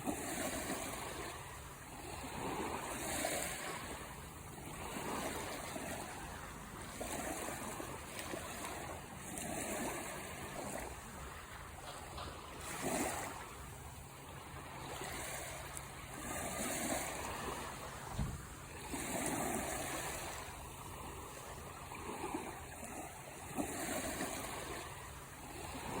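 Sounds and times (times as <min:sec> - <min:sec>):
sea waves washing in: 0:00.0 - 0:26.0
brief knock: 0:18.1 - 0:18.4.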